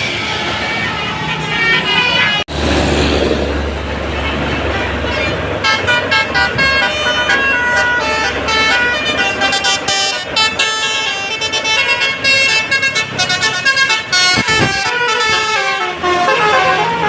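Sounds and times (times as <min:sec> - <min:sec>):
multi-tone musical air horn: 0:04.8 - 0:17.0.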